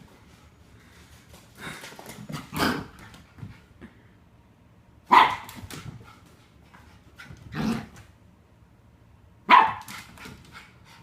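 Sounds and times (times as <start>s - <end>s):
dog barking: 5.1s - 5.5s, 9.5s - 9.9s.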